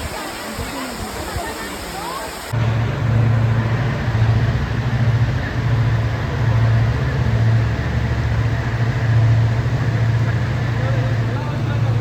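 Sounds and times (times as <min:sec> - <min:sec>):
road noise: 0:00.0 - 0:12.0
vehicle engine humming: 0:02.5 - 0:12.0.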